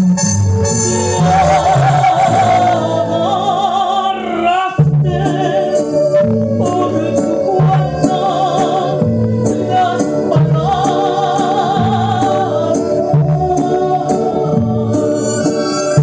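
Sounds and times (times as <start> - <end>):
bass and percussion beat: 0.0 - 2.8
woman singing with vibrato: 0.9 - 15.3.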